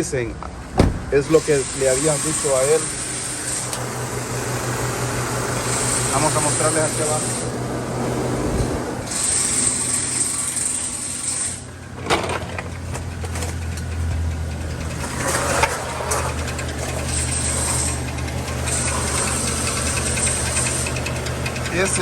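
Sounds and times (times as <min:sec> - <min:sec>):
engine idling with rattling knock: 0:00.7 - 0:02.2, 0:11.7 - 0:22.0.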